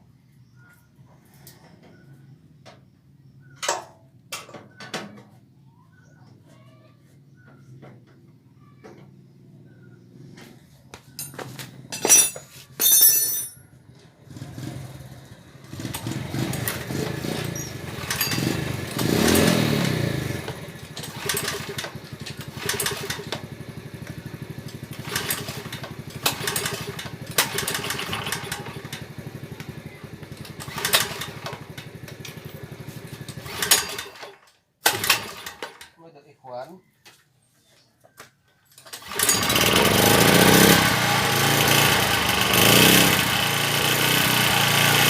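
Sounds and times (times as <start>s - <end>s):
small generator engine running: 14.1s - 35.8s, 38.9s - 45.0s.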